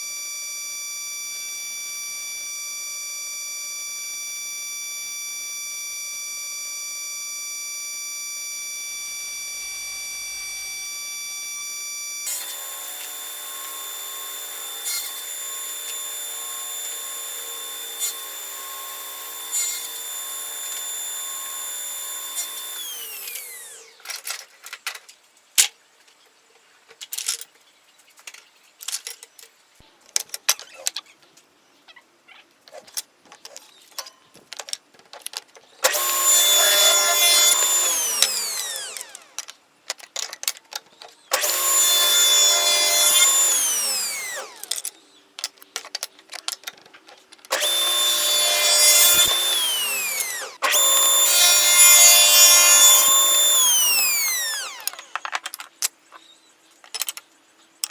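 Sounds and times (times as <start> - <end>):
power tool motor running: 0.0 - 24.2, 35.8 - 39.5, 41.3 - 45.6, 47.5 - 55.4
wood pieces clicking and knocking: 26.9 - 27.6, 28.2 - 31.0, 32.7 - 56.2, 56.8 - 57.9.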